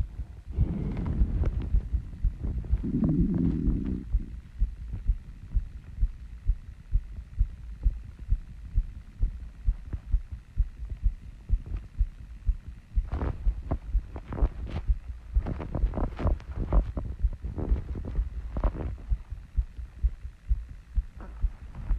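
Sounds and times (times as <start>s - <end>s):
heartbeat thumps: 0.0s - 21.9s.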